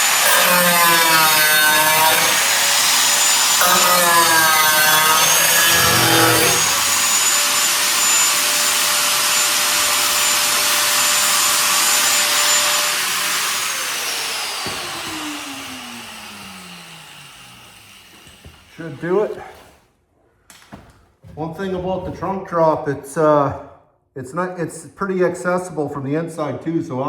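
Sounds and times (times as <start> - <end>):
rotary power tool whine: 0.0 - 19.2.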